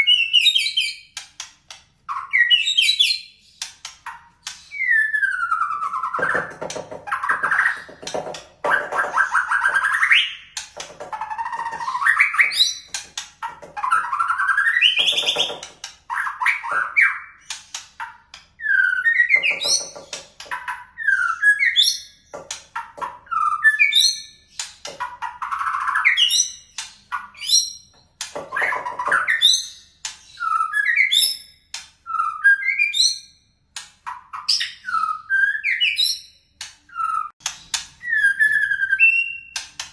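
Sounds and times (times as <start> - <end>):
bird singing varied whistled song: 4.6 - 6.4, 29.1 - 31.5, 38.0 - 39.6.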